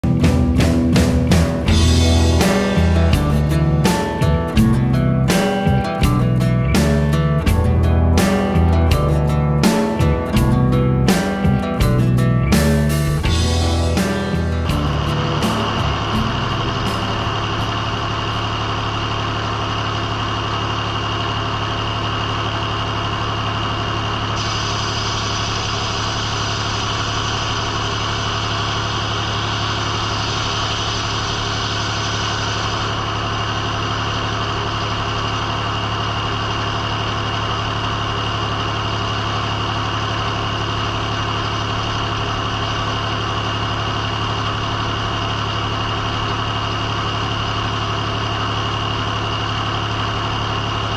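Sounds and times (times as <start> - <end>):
sawmill engine running with whine: 0.0 - 50.9
hiss: 24.4 - 33.0.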